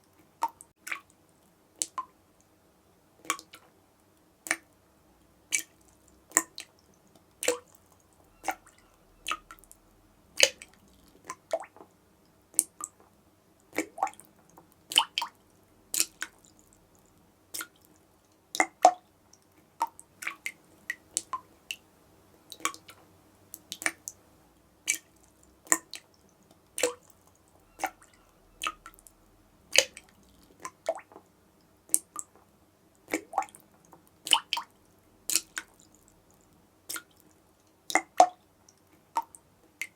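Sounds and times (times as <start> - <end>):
water dripping from tap: 5.5 - 9.8, 14.9 - 18.0, 22.5 - 24.2, 24.9 - 31.2, 33.0 - 37.3, 37.9 - 38.4.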